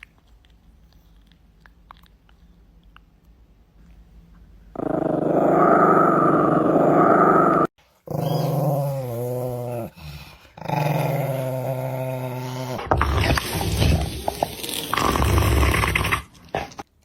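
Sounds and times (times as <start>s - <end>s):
dog growling: 4.8s - 16.8s.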